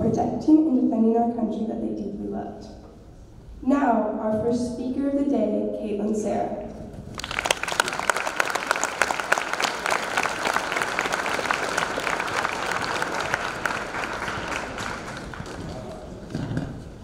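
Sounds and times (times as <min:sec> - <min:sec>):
crowd applauding: 0:07.1 - 0:16.7.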